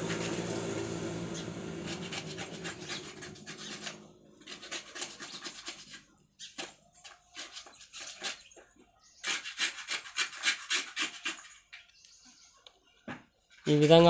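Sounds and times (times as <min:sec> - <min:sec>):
low hum: 0:00.0 - 0:04.3.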